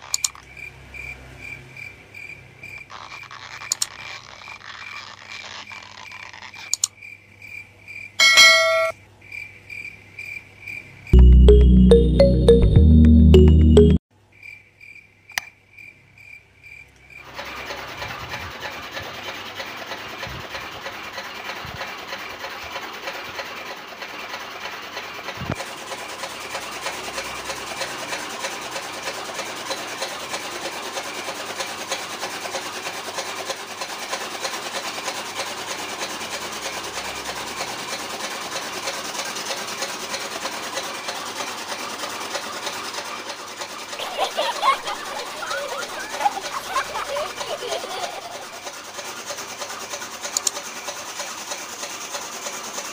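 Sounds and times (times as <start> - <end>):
chaff cutter rasping and ticking: 2.9 - 6.9.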